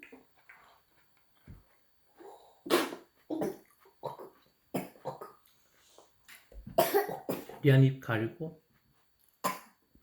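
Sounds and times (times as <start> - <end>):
toddler coughing: 2.7 - 5.4, 6.8 - 7.6.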